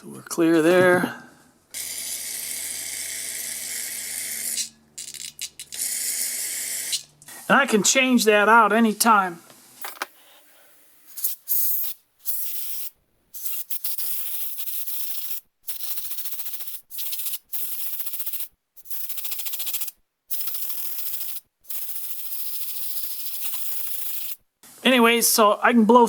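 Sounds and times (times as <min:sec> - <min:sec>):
aerosol spray hissing: 0:10.2 - 0:24.4.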